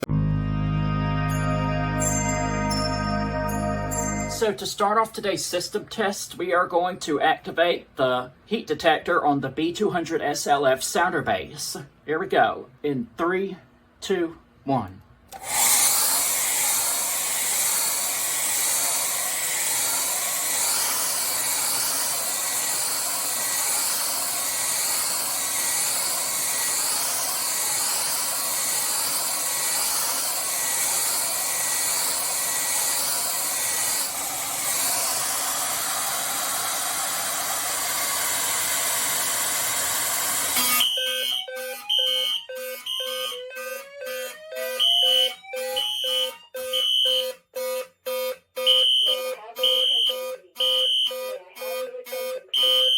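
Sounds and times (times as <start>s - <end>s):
rising sweeping tones: 0.0s - 4.5s
short higher beeps: 0.0s - 4.5s, 40.6s - 43.4s
hair dryer blowing: 15.3s - 40.8s
fire alarm sounders: 40.6s - 52.9s.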